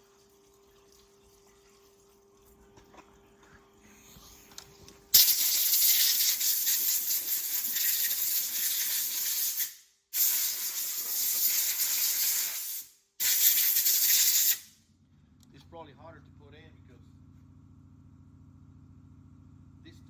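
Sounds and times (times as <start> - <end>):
pressurized jet hissing: 5.2 - 14.7.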